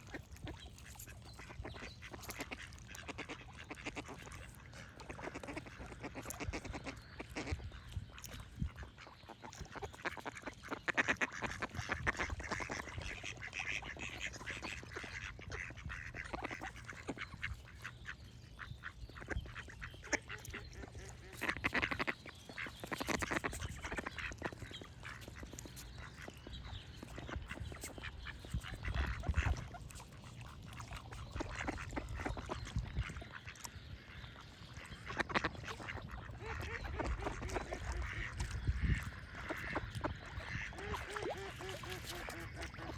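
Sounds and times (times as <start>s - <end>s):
ducks quacking: 0.0s - 42.9s
faint birdsong: 0.0s - 42.9s.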